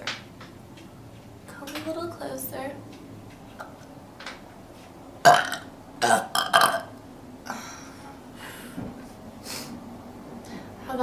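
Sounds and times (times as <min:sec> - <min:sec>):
woman burping: 0:05.3 - 0:07.7.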